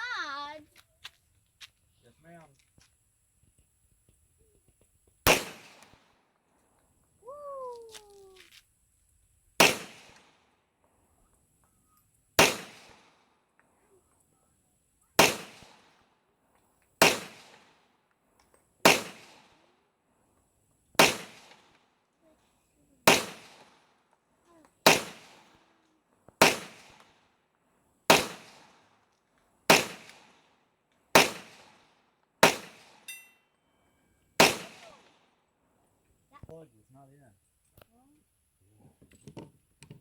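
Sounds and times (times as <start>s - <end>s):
pistol shots with echo: 5.3s - 6.1s, 9.6s - 10.4s, 12.4s - 13.2s, 15.2s - 16.0s, 17.0s - 17.8s, 18.8s - 19.6s, 21.0s - 21.8s, 23.0s - 23.9s, 24.8s - 25.6s, 26.4s - 27.2s, 28.1s - 28.8s, 29.7s - 33.1s, 34.4s - 35.3s.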